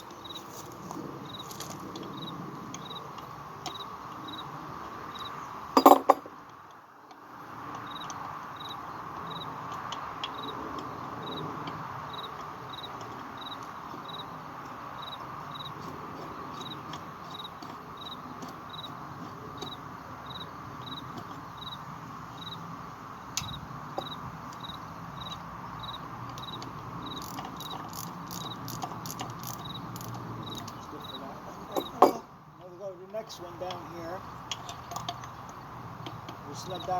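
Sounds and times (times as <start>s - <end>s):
cricket chirping: 0.0s - 6.0s, 7.8s - 9.6s, 10.2s - 15.8s, 16.5s - 19.0s, 19.6s - 22.7s, 23.4s - 32.2s
background hum: 0.0s - 36.9s
ratchet clicking: 26.5s - 30.8s.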